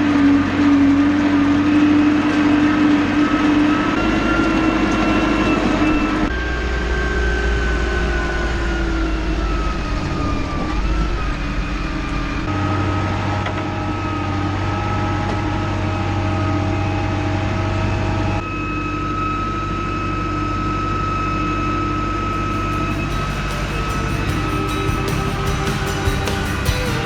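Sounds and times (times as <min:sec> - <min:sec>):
tractor engine running: 0:22.0 - 0:27.0.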